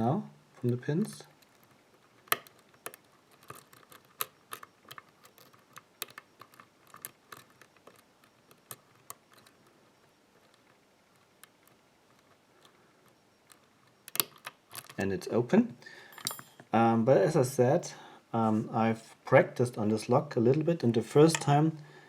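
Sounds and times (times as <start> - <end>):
lock pick clicking on pins: 1.4 - 9.6, 13.4 - 15.0, 16.1 - 16.7.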